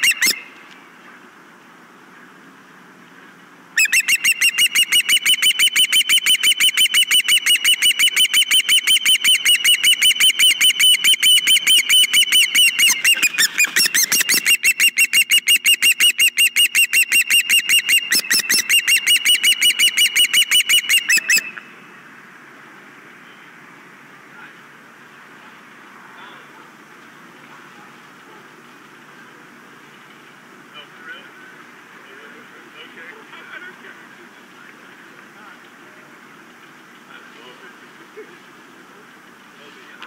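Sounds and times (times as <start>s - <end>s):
bird high chirping calls: 0.0s - 0.6s, 3.8s - 22.0s.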